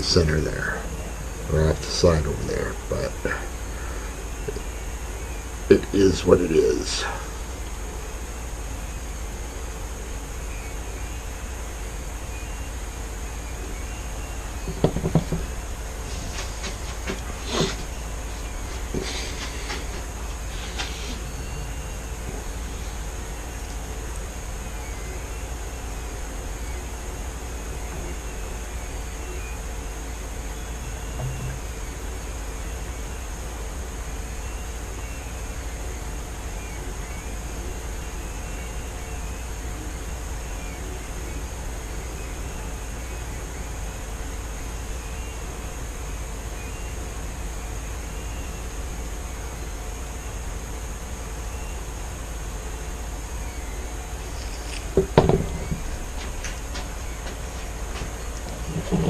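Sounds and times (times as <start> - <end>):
background hum and hiss: 0.0 - 59.0
wooden frame knocking and clicking: 14.7 - 15.5, 55.0 - 58.0
short scrape: 19.0 - 21.2.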